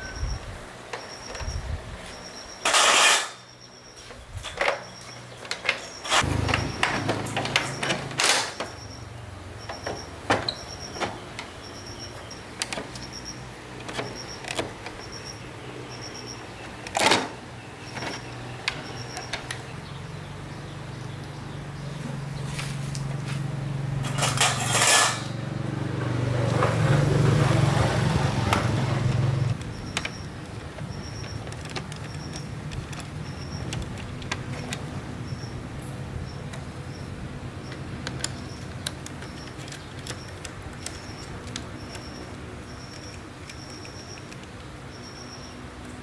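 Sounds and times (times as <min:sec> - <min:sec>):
sharp clicks and knocks: 0:12.2 - 0:13.2, 0:13.8 - 0:15.4, 0:27.8 - 0:44.8.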